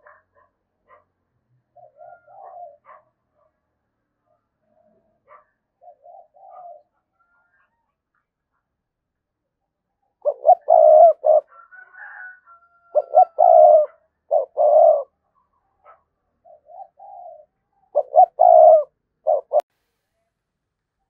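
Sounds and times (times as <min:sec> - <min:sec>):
dove cooing: 0:01.7 - 0:03.0, 0:04.7 - 0:07.4, 0:10.2 - 0:15.2, 0:15.9 - 0:19.7.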